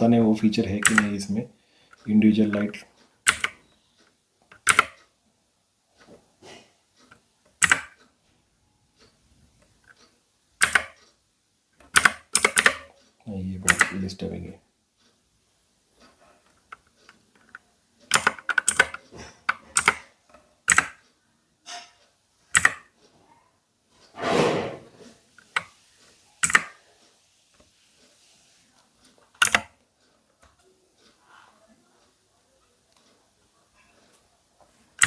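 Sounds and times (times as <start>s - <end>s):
mechanical keyboard clacking: 0.5s - 1.3s, 2.2s - 3.7s, 4.5s - 5.0s, 7.6s - 8.0s, 10.6s - 11.0s, 11.9s - 12.9s, 13.6s - 14.2s, 17.4s - 21.0s, 22.5s - 22.9s, 26.4s - 26.8s, 29.4s - 29.8s.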